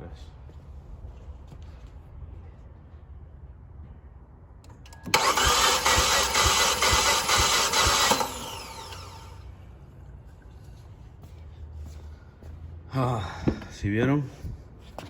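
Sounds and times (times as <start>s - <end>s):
engine starter cranking: 4.8s - 9.4s.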